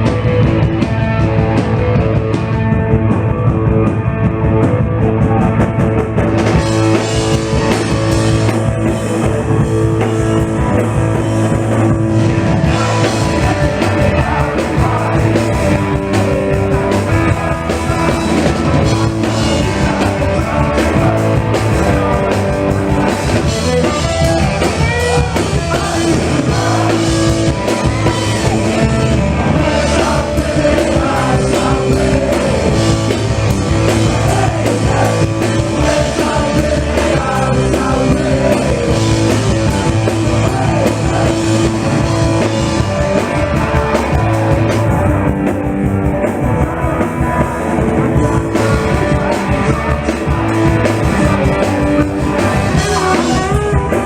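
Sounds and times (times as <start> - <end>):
punk rock band playing live: 0.0 - 54.0
person singing lead vocal: 11.7 - 54.0.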